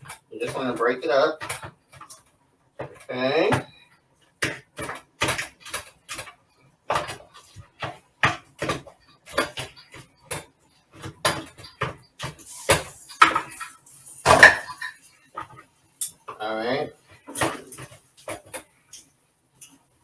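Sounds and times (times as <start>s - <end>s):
forks scraping on cookware: 11.4s - 16.2s.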